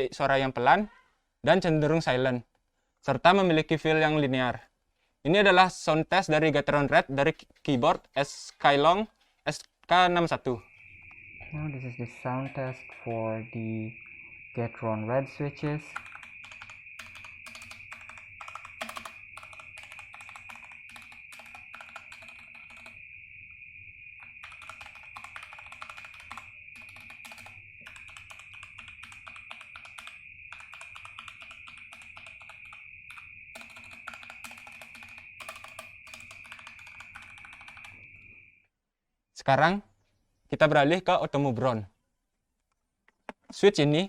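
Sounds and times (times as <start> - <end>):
keyboard keys clattering: 15.9 - 22.9, 24.4 - 38.0.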